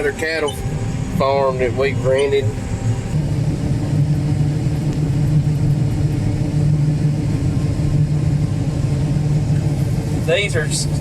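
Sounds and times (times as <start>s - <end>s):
combine harvester running: 0.0s - 11.0s.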